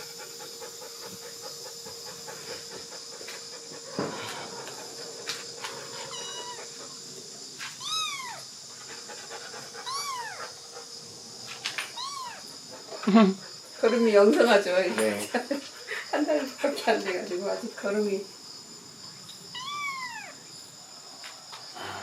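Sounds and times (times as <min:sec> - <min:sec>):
steady background hiss: 0:00.0 - 0:22.0
kitten meowing: 0:06.1 - 0:06.6, 0:07.8 - 0:08.4, 0:09.8 - 0:10.4, 0:12.0 - 0:12.4, 0:19.5 - 0:20.4.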